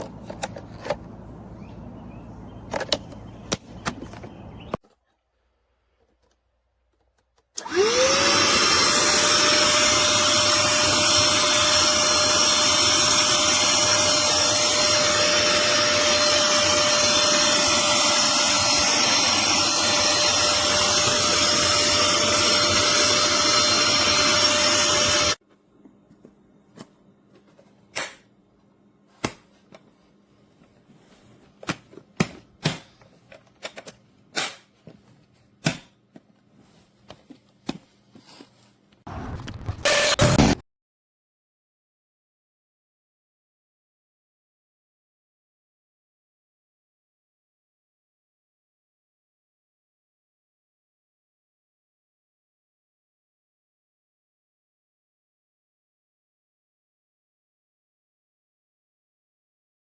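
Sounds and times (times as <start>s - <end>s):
handheld vacuum motor whine: 7.6s - 25.4s, 39.5s - 40.6s.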